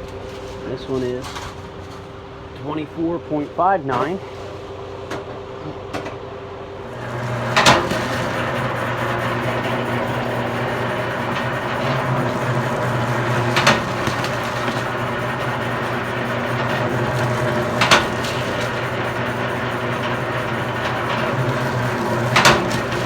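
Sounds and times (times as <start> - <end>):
wire stripping machine humming: 3.6 - 23.0.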